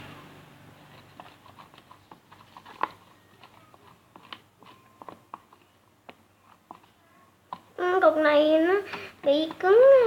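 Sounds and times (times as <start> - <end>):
slime squelching while stirred: 0.7 - 10.0.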